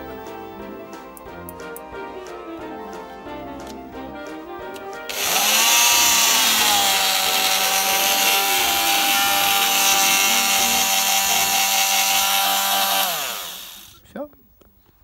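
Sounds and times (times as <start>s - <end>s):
oscillating multi-tool motor whining: 5.1s - 14.0s.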